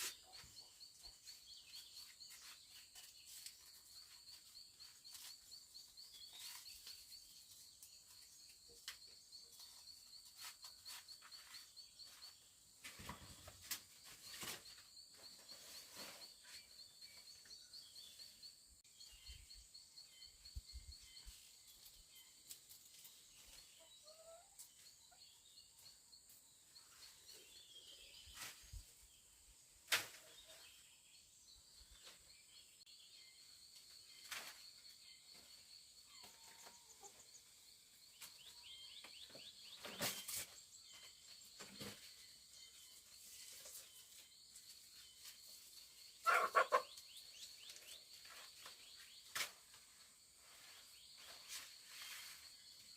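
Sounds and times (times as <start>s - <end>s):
insect chirping: 3.2s - 12.6s, 13.7s - 22.4s, 30.6s - 52.9s.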